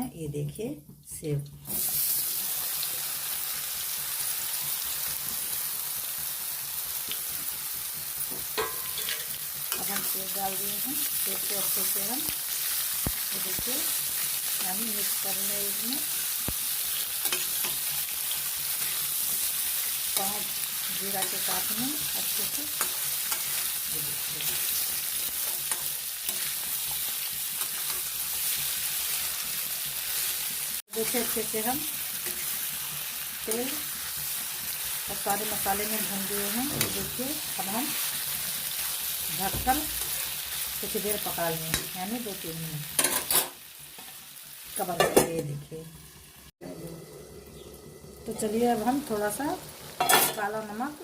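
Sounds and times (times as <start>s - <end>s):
apple frying in hot oil: 1.6s - 51.0s
spoon scraping a pan: 8.3s - 10.3s, 16.9s - 28.7s.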